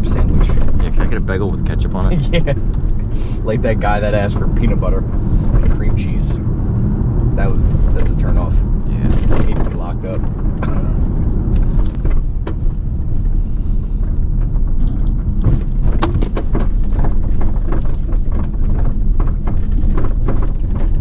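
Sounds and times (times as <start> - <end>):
vehicle road noise rumble: 0.0 - 21.0.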